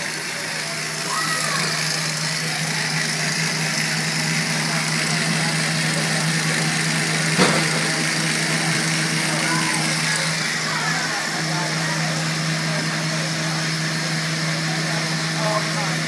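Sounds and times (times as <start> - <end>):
chainsaw engine running: 0.0 - 16.0
sharp knock: 7.4 - 7.9.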